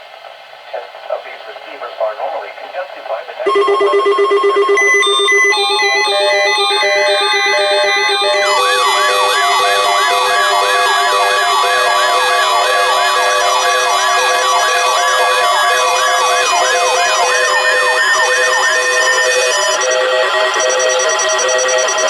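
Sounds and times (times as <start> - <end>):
steady alert tone: 3.5 - 19.8
electronic siren-like whoop: 3.5 - 21.4
layered beeping tones: 3.5 - 22.0.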